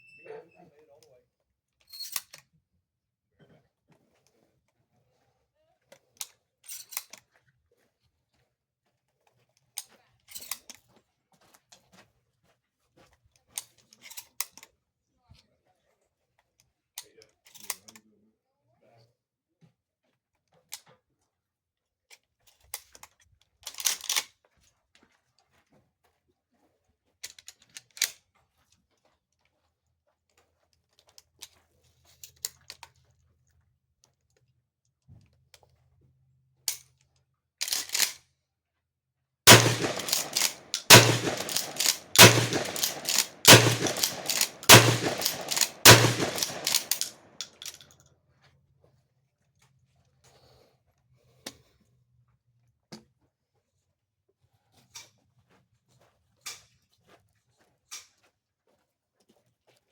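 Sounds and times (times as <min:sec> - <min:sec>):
shotgun shots ringing: 0:39.5 - 0:47.1
gun handling clicks: 0:39.5 - 0:47.8.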